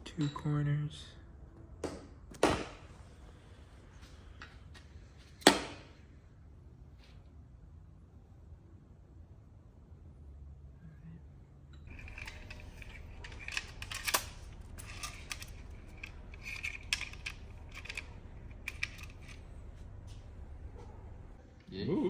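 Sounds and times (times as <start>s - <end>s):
low steady hum: 0.0s - 22.0s
metal studs clicking and clinking: 11.8s - 21.4s.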